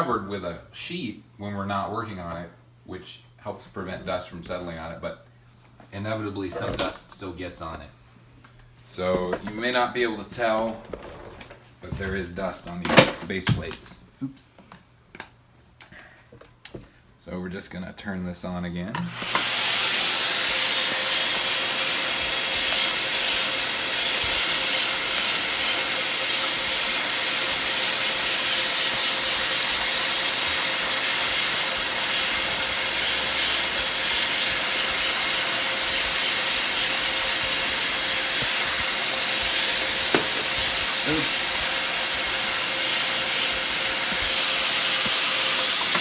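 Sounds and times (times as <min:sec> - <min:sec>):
vacuum cleaner running: 0:19.1 - 0:46.0.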